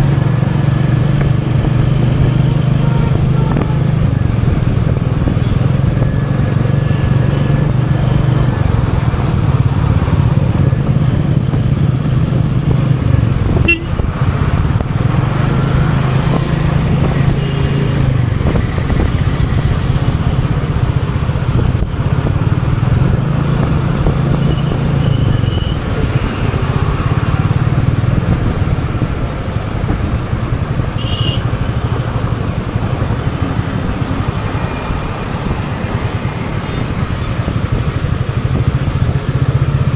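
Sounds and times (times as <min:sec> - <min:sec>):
motorcycle engine running: 0:00.0 - 0:39.9
vehicle horn toots: 0:13.6 - 0:14.0, 0:17.2 - 0:18.0, 0:24.4 - 0:26.5, 0:31.0 - 0:31.8.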